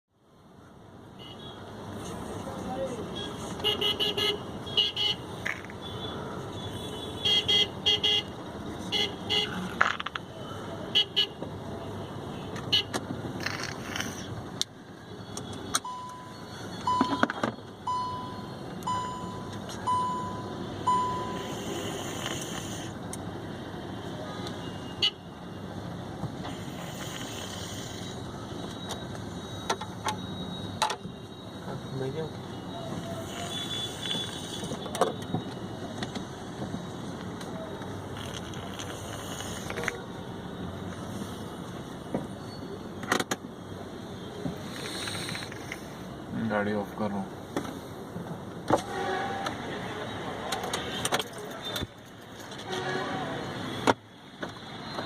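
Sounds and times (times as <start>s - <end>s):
road noise: 0.1s - 55.0s
traffic horns honking: 1.1s - 2.0s, 2.9s - 13.0s, 23.8s - 25.8s, 26.4s - 35.9s, 48.7s - 54.0s
short electronic beeps: 15.2s - 21.5s
child snoring: 21.2s - 23.0s, 26.5s - 28.2s, 44.6s - 45.6s.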